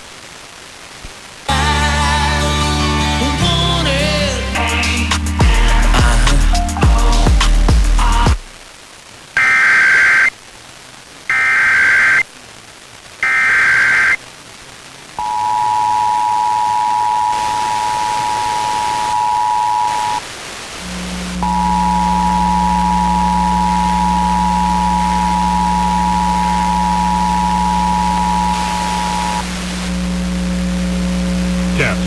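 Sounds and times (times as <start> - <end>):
low hum: 4.3 - 8.5, 20.8 - 32.0
data bursts: 9.4 - 10.3, 11.3 - 12.2, 13.2 - 14.2, 15.2 - 20.2, 20.8 - 32.0
two-tone attention signal: 15.2 - 20.2, 20.9 - 29.4.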